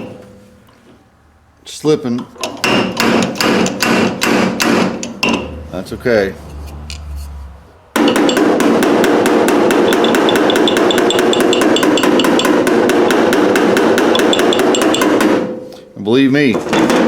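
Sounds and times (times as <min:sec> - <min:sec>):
rapid hammering on steel panel: 0:02.5 - 0:05.6, 0:08.0 - 0:15.6, 0:16.6 - 0:17.0.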